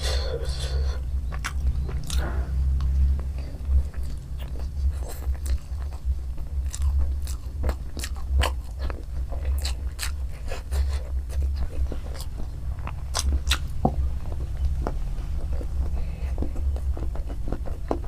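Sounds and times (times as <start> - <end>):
close chewing with mouth clicks: 0.0 - 18.0
low hum: 0.0 - 18.0.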